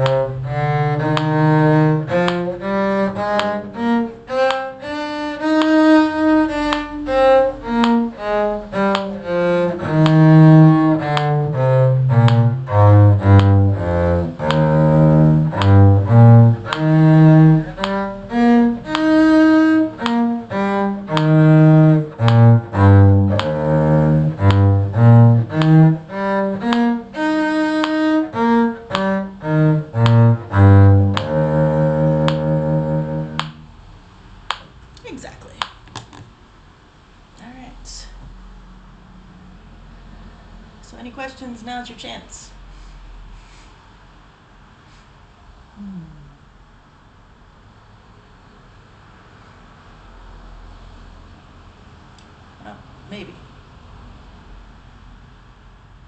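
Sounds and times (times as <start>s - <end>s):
cello playing scale: 0.0s - 33.9s.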